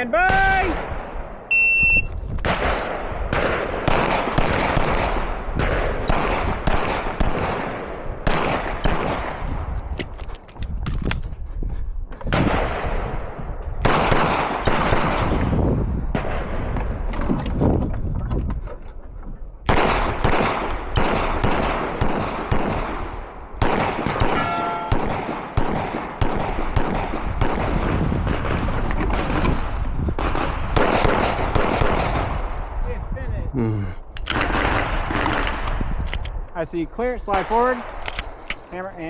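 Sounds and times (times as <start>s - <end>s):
brief ringing tone: 1.5s - 2.1s, 24.4s - 25.0s
handgun shots with echo: 23.6s - 27.8s.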